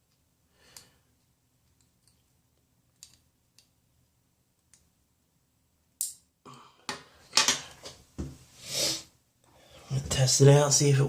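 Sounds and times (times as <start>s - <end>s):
handling noises with sharp clicks: 0.0s - 4.9s.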